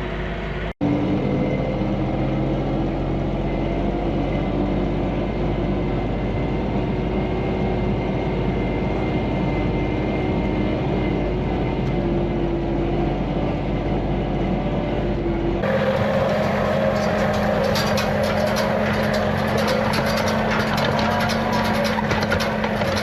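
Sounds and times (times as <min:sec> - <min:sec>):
diesel tractor engine running: 0:00.0 - 0:23.0.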